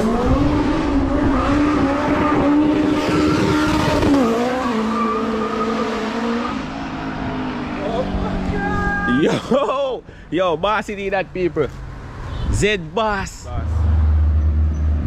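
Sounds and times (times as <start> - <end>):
car engine at high revs: 0.0 - 9.1.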